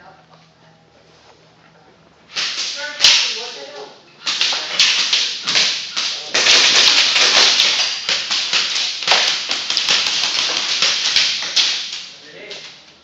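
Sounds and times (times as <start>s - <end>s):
rapid airsoft gunfire: 4.3s - 12.1s.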